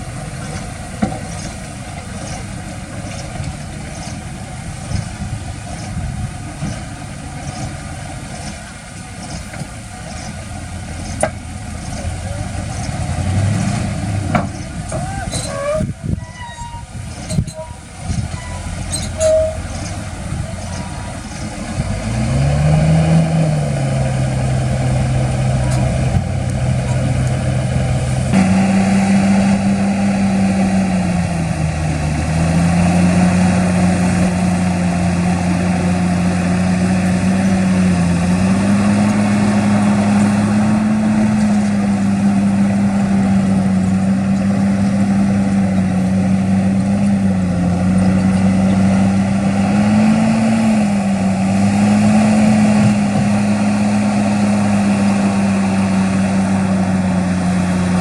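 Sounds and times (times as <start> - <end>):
heavy diesel engine running: 0.0 - 58.0.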